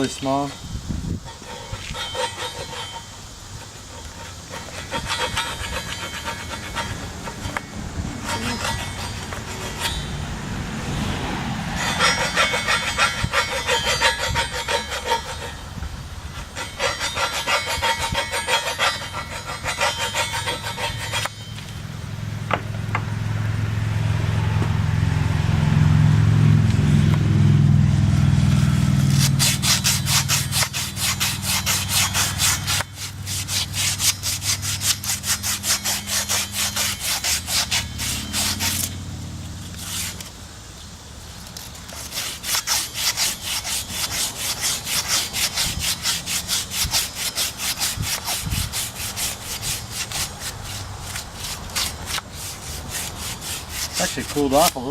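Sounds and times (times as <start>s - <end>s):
hand scraping steel gear: 1.2s - 21.8s, 28.5s - 40.4s, 41.3s - 54.9s
low hum: 3.9s - 17.3s.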